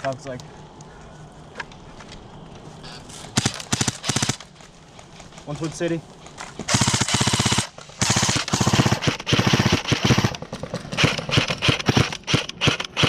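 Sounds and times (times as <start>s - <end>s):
airsoft rifle bursts: 3.3s - 4.6s, 6.6s - 13.0s.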